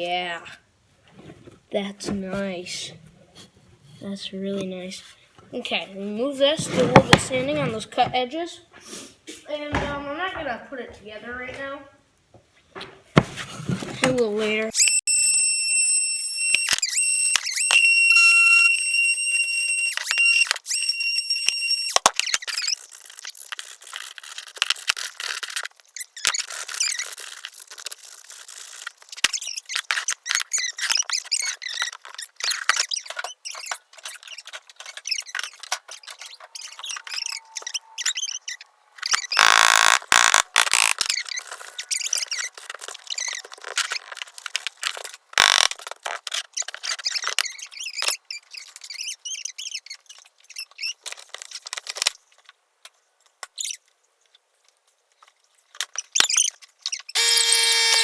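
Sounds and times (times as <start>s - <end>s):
high steady squeal: 14.8s - 22.0s, 35.9s - 41.0s, 57.2s - 58.0s.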